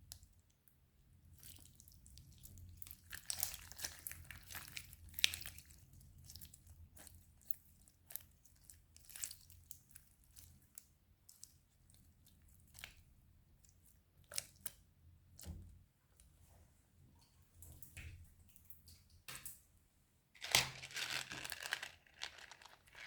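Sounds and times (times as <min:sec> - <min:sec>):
slime crackling and popping: 0:20.4 - 0:23.0.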